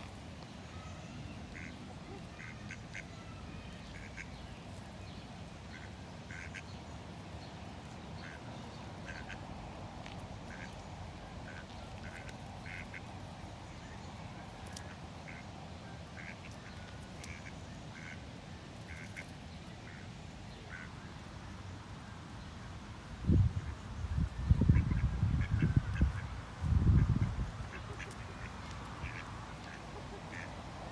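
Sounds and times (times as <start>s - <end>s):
ducks quacking: 1.5s - 3.3s, 4.0s - 4.4s, 5.7s - 6.8s, 8.2s - 9.5s, 11.5s - 13.1s, 16.2s - 18.2s, 20.7s - 21.0s, 24.7s - 30.9s.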